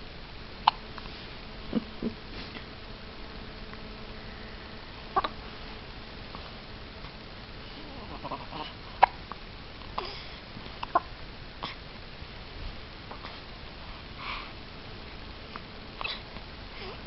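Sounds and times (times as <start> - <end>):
baby hiccuping: 5.2 - 5.4, 16.0 - 16.2.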